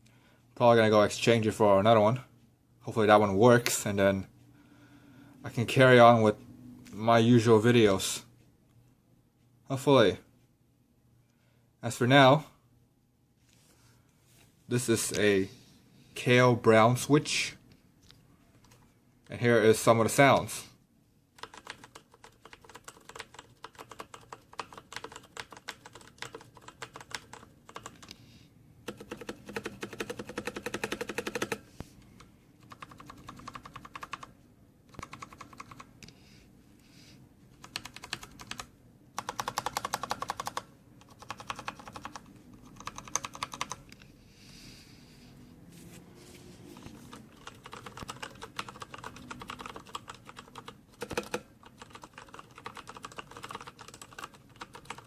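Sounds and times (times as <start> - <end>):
mechanical keyboard typing: 21.4 - 28.1, 28.8 - 31.6, 32.6 - 34.3, 34.9 - 35.9, 37.6 - 43.9, 46.8 - 55.0.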